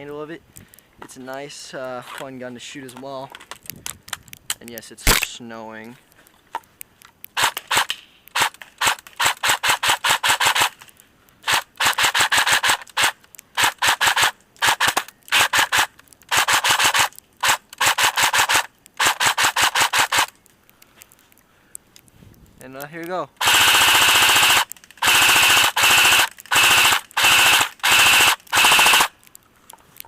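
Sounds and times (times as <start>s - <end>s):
airsoft rifle firing bursts: 7.4s - 10.8s, 11.4s - 20.3s, 23.4s - 29.1s.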